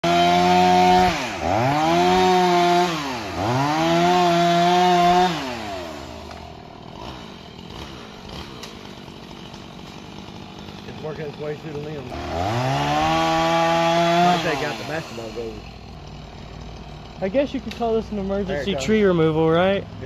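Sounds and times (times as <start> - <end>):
chainsaw cutting tree: 0.0 - 19.7.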